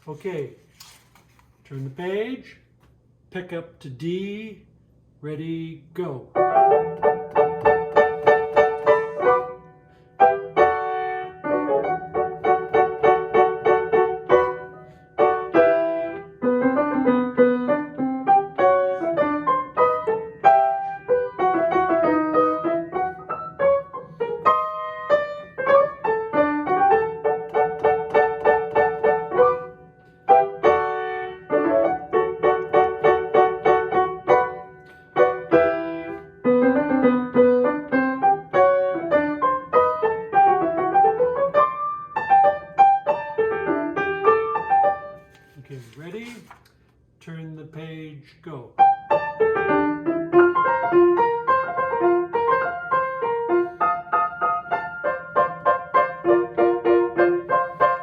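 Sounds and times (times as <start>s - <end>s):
piano playing chords: 6.3s - 45.3s, 48.8s - 58.0s.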